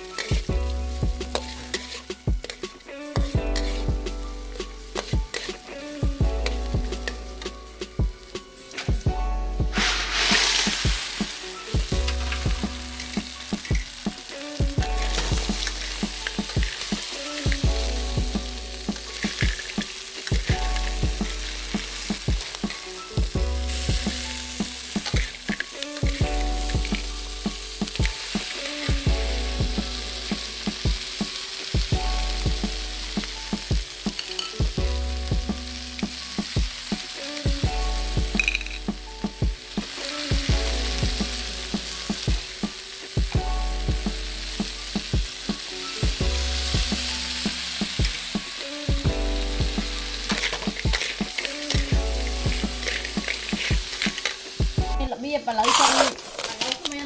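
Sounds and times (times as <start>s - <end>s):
background music with bass line: 0.0s - 55.4s
crab sizzling in hot oil: 9.7s - 54.9s.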